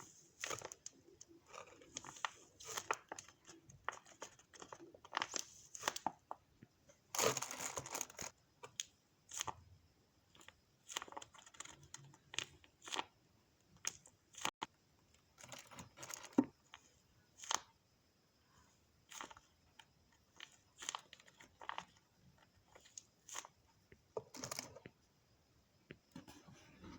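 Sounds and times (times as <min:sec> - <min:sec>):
plastic and paper crinkling: 0:00.4 - 0:06.3, 0:07.1 - 0:08.3.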